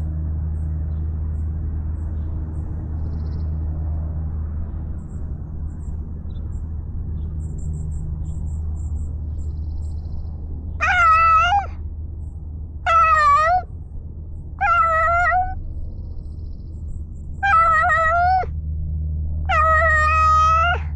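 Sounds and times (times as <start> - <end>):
steady low rumble: 0.2 - 20.9
cat meowing: 10.8 - 11.8, 12.9 - 13.7, 14.6 - 15.6, 17.4 - 18.5, 19.5 - 20.9.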